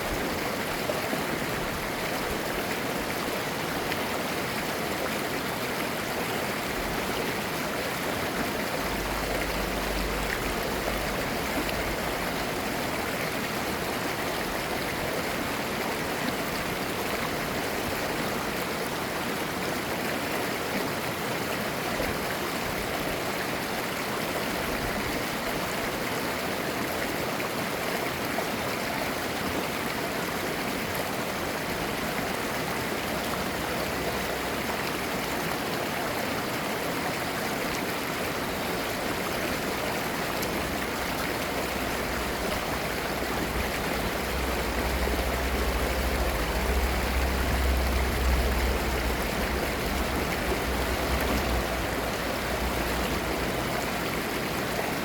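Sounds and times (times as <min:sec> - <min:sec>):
stream flowing over rocks: 0:00.0 - 0:55.0.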